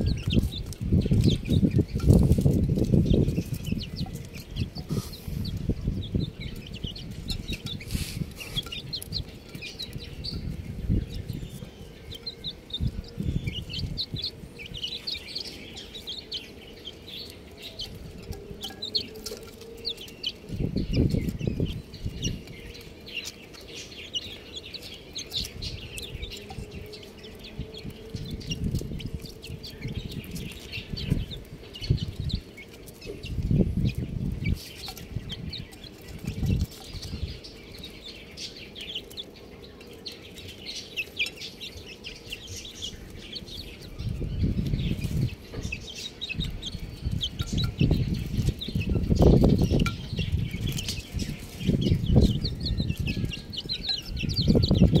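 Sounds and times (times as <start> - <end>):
chicks cheeping: 0.0 - 55.0.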